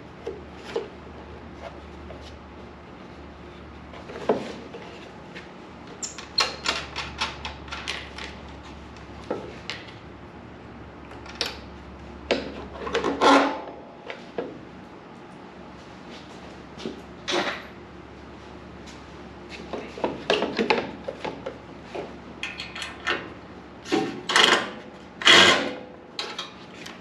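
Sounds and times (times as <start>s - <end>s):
tools clattering: 22.4s - 23.2s.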